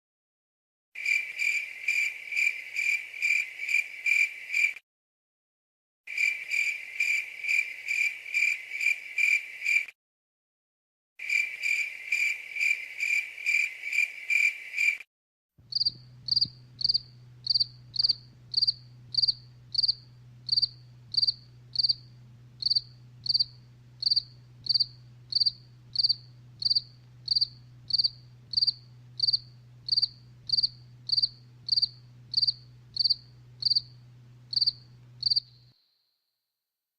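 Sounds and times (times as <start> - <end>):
low hum: 15.6 - 35.8
crickets chirping: 15.7 - 36.0.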